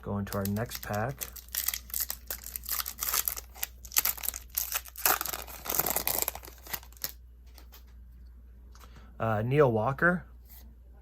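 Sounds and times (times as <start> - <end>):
wrapper tearing and crinkling: 0.3 - 7.2.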